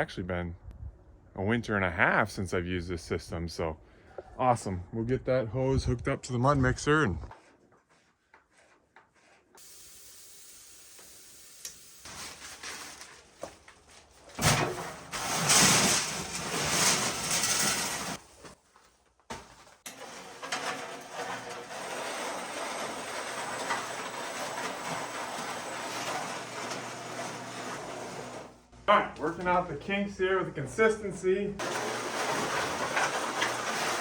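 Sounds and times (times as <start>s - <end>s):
water rushing from a hose: 9.6s - 12.4s
mortar mixer churning: 19.9s - 28.5s, 31.6s - 34.0s.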